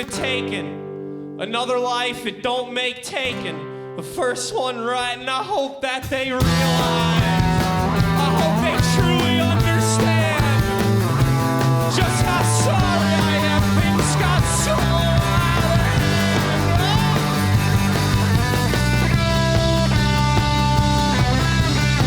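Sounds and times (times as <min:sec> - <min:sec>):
rock band playing live: 0:06.4 - 0:22.0.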